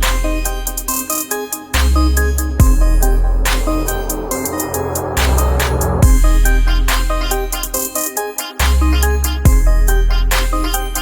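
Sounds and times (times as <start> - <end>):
electronic music with heavy bass: 0.0 - 11.0
sharp hit: 1.9 - 7.9.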